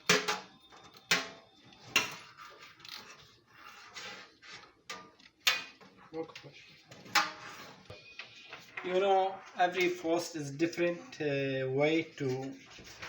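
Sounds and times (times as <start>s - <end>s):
scraping and rustling: 2.0s - 5.2s.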